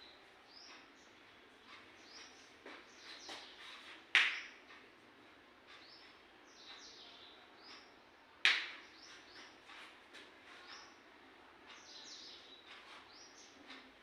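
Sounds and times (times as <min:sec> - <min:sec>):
birds chirping: 0:00.0 - 0:04.7, 0:05.7 - 0:08.2, 0:11.7 - 0:13.9.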